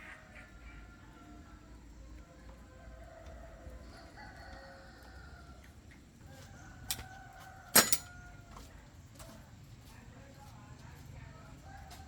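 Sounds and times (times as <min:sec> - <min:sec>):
rooster crowing: 0:02.7 - 0:08.5.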